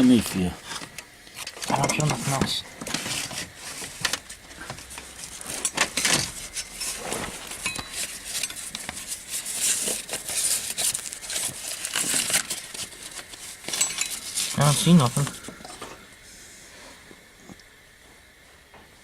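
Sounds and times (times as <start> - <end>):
hands rustling among wiring: 0.0 - 16.0.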